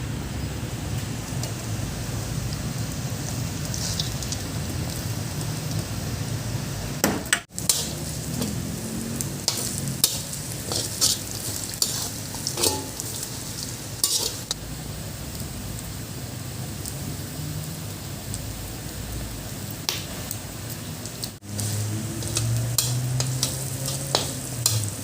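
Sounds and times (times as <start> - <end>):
food sizzling in oil: 0.1 - 25.0
spoon knocking and scraping pot: 11.9 - 13.2.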